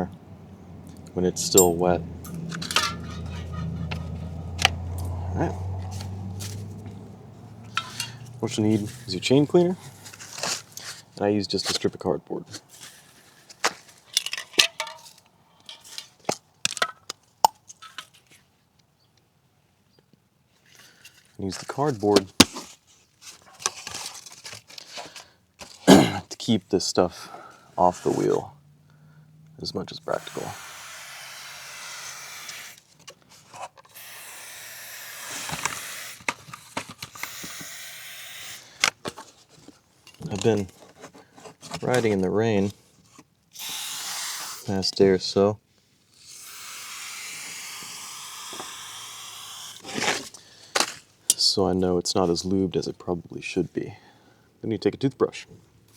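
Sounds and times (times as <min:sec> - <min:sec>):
sharp clink: 0:01.6 - 0:03.5, 0:07.7 - 0:08.3
cardboard and can handling clicks: 0:09.9 - 0:11.9, 0:13.5 - 0:18.3, 0:21.6 - 0:25.9, 0:35.2 - 0:37.7, 0:49.7 - 0:51.1
aerosol spray hissing: 0:30.2 - 0:32.8, 0:34.0 - 0:36.3, 0:37.2 - 0:38.7, 0:43.6 - 0:44.7, 0:46.3 - 0:49.8.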